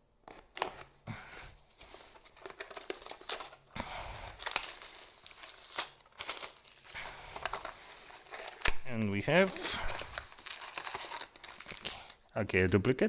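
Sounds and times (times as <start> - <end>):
plastic wrapper crinkling and tearing: 1.7 - 13.0.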